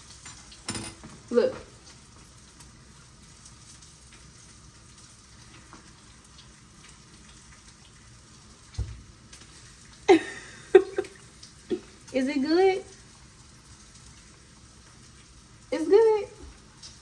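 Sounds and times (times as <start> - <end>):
bacon and sausages sizzling: 0.0 - 17.0
dull thump: 8.8 - 9.0.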